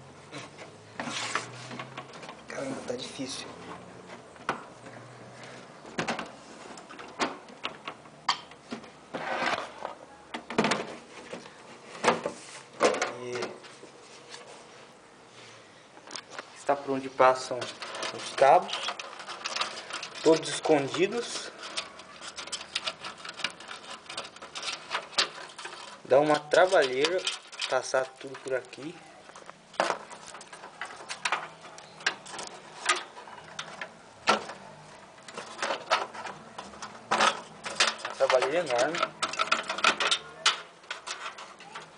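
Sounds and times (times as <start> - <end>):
short scraping sounds: 0.3 - 1.9, 9.1 - 9.8
plastic and metal parts clicking: 17.5 - 41.9.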